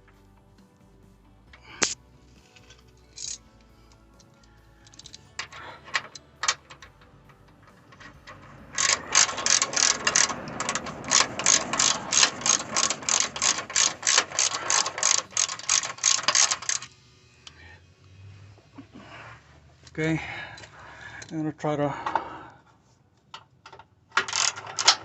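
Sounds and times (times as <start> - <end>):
hand ratchet clicking: 1.6 - 3.4, 4.2 - 17.6, 23.7 - 25.0.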